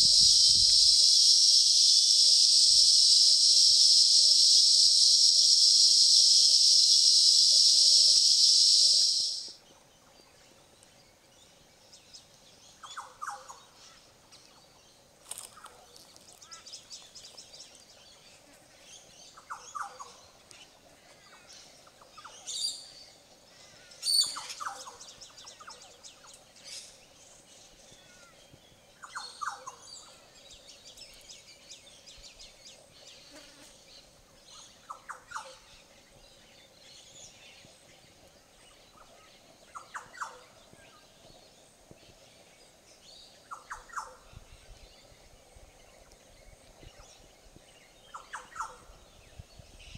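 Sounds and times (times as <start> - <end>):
higher sharp bird calls: 0.0 - 9.6
insects droning: 0.0 - 9.6, 10.3 - 49.9.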